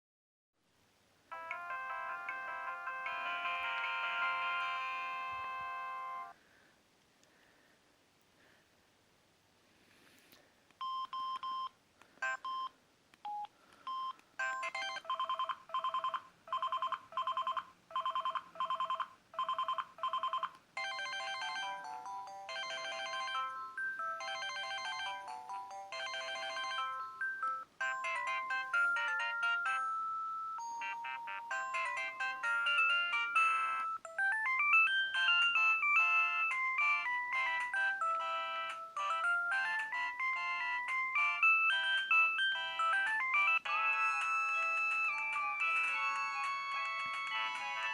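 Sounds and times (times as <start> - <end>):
electronic ringtone melodies: 1.3 - 6.4, 13.3 - 47.9
pulsing phone ring: 14.4 - 47.9.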